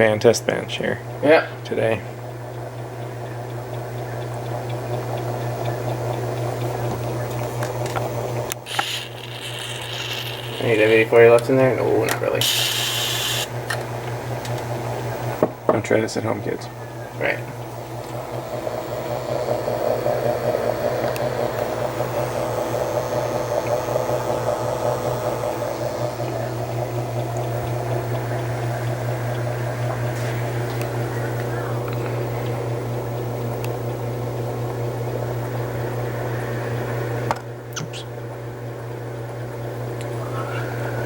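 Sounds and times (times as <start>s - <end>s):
ceiling fan motor humming: 0.0s - 41.0s
faint regular ticking: 2.2s - 11.5s.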